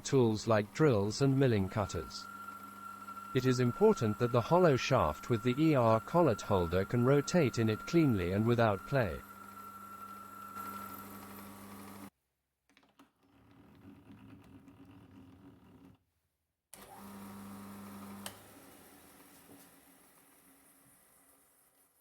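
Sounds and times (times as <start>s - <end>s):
workshop machine motor humming: 0.0s - 12.1s.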